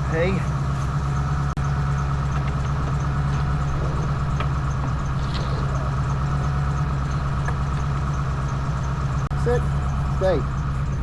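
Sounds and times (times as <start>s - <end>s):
low mechanical hum: 0.0s - 11.0s.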